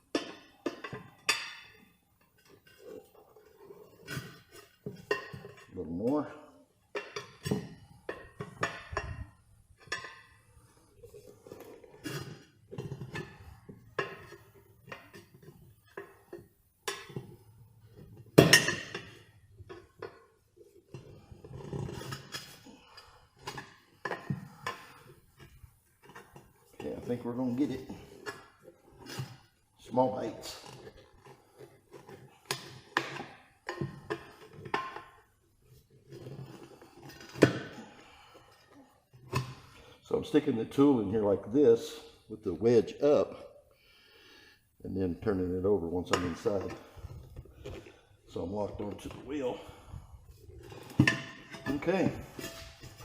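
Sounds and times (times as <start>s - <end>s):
metal tools clinking on wheel rim: 50.6s - 53.0s.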